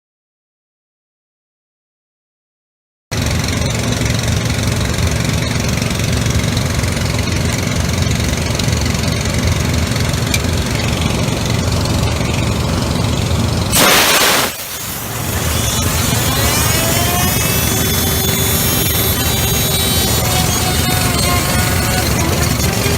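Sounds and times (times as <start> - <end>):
machine humming: 3.2 - 22.9
bright rushing noise: 10.6 - 22.9.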